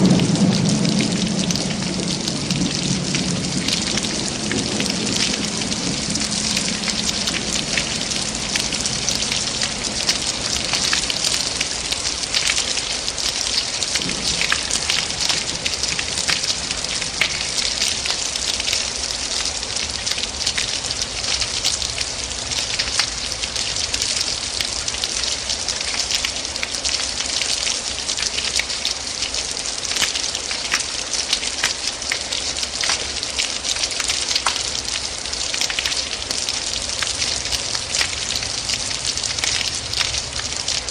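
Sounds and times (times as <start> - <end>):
low rumble: 0.0 - 12.8
heavy rain pattering: 0.0 - 40.9.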